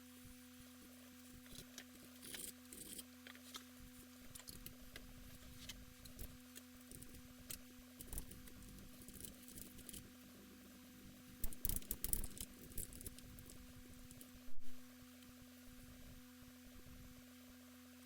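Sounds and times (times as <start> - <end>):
steady low hum: 0.0 - 18.0
hands handling small parts: 1.4 - 10.1, 11.4 - 14.3.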